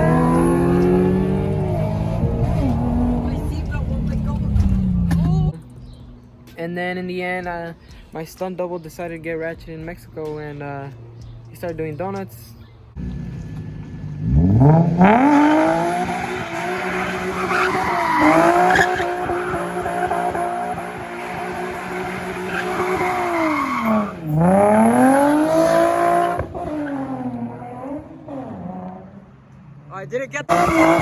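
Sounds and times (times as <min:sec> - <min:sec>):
car engine revving hard: 0:00.0 - 0:05.5, 0:13.0 - 0:29.2, 0:30.5 - 0:31.0
tires squealing: 0:00.0 - 0:05.6, 0:13.0 - 0:29.4, 0:30.4 - 0:31.0.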